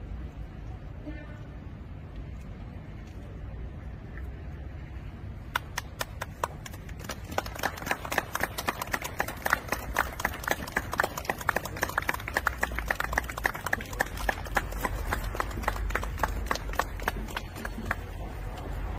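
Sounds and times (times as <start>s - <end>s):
group clapping hands: 5.5s - 18.9s.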